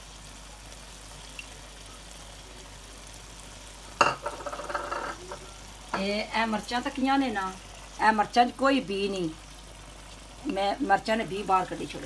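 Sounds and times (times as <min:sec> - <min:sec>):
food sizzling in oil: 0:00.0 - 0:12.0.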